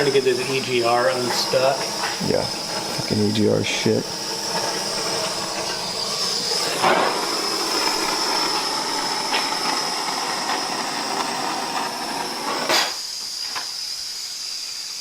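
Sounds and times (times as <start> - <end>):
torch flame hissing: 0.0 - 15.0.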